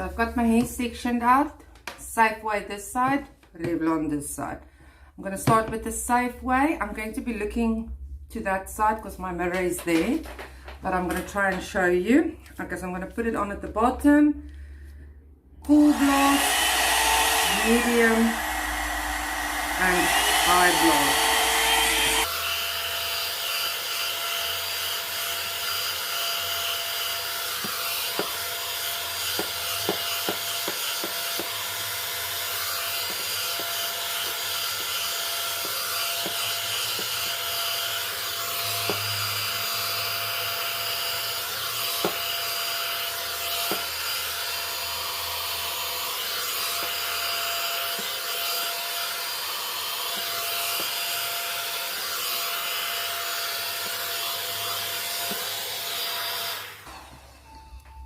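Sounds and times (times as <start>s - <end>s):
hot air brush fan whining: 15.7s - 23.9s, 41.2s - 57.4s.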